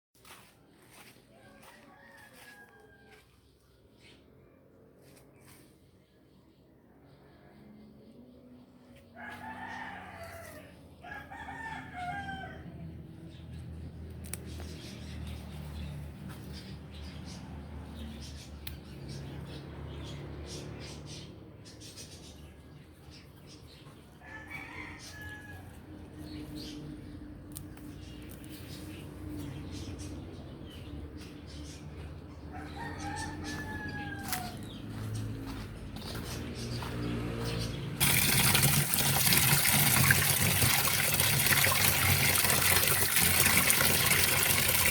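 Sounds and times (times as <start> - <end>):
rooster crowing: 1.3 - 3.3, 9.2 - 12.8, 24.2 - 25.8, 32.5 - 35.6.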